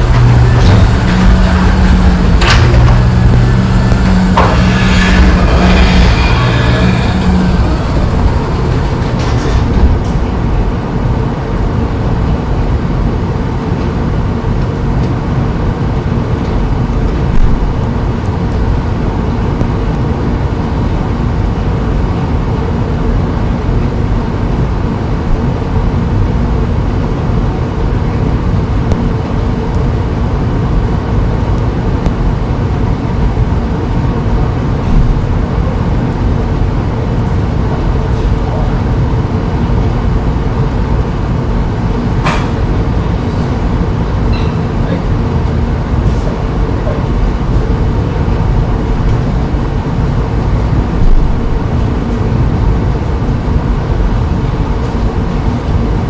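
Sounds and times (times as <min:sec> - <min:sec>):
vehicle rumble in motion: 0:00.0 - 0:12.4.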